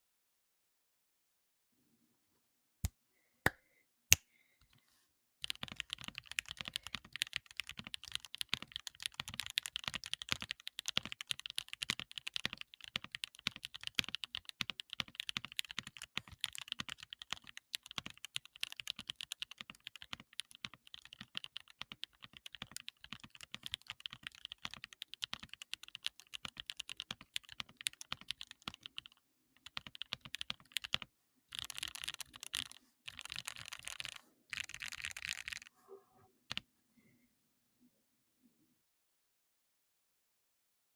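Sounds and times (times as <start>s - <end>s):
mechanical keyboard typing: 5.4s - 35.7s.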